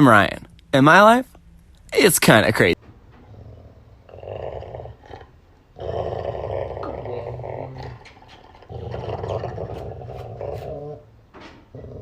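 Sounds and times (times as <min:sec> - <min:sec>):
dog growling: 0:03.2 - 0:12.0.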